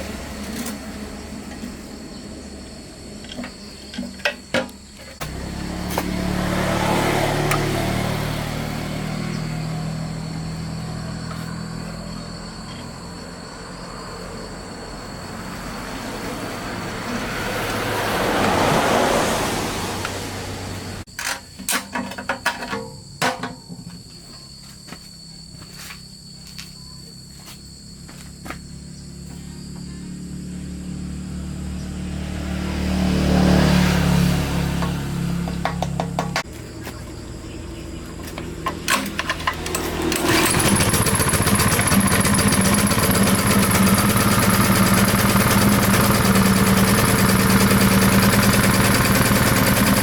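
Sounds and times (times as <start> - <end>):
small petrol engine humming: 0.0 - 21.1, 28.2 - 50.0
sharp clicks and knocks: 34.8 - 36.5.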